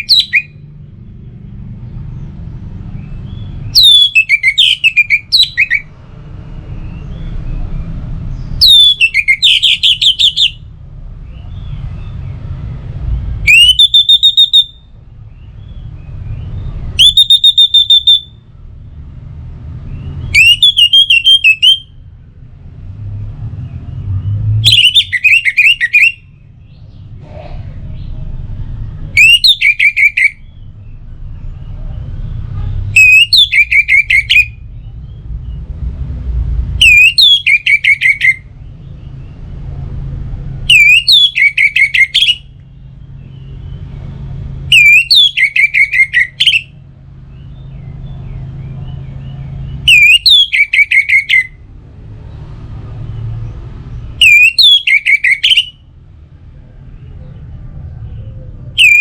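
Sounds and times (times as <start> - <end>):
bird call whistles and chirps: 0.0 - 0.6, 3.0 - 5.9, 8.6 - 10.6, 13.5 - 14.9, 15.7 - 18.4, 20.0 - 22.0, 24.6 - 26.9, 29.2 - 30.5, 33.0 - 34.9, 36.8 - 38.5, 40.7 - 42.6, 44.7 - 46.8, 47.4 - 51.6, 54.2 - 55.9, 58.2 - 59.0.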